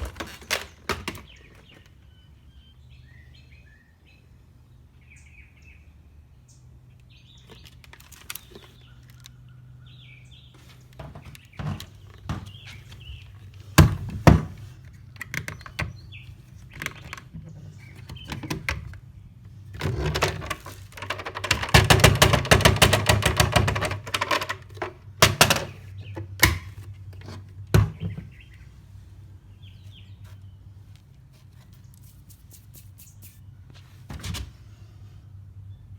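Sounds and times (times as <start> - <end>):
knocks and clatters of handling: 0.0 - 1.9, 10.6 - 16.0, 19.7 - 28.4
birds chirping faintly: 0.0 - 21.6, 23.8 - 35.9.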